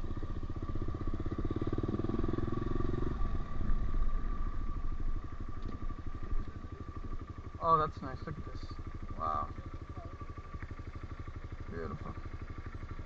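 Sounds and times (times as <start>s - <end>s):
motorcycle engine at low revs: 0.0s - 13.0s.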